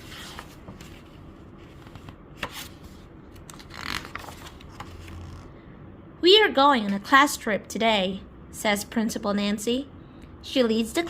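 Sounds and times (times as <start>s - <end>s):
paper pages rustling: 0.0s - 5.4s.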